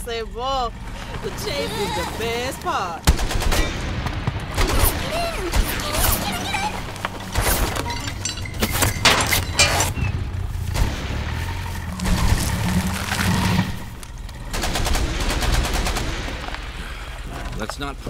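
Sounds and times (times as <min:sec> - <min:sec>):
car engine rumble: 0:00.0 - 0:18.0
sharp bangs and crashes: 0:03.0 - 0:17.3.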